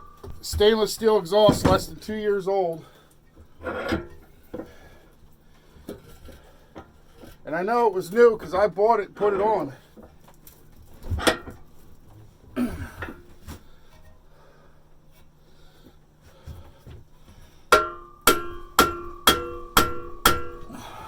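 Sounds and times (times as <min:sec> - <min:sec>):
hammer striking metal: 0:00.0 - 0:00.9, 0:17.7 - 0:20.9.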